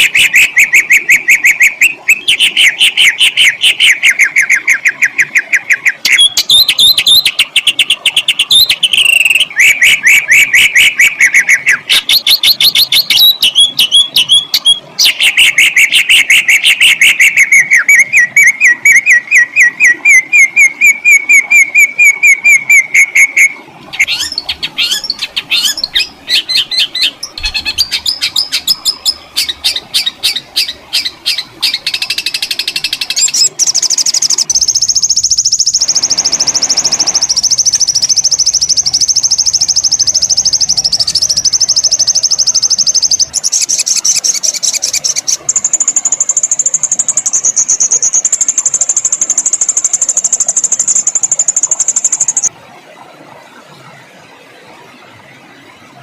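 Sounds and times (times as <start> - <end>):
songbird rolling trills: 24.0 - 52.5.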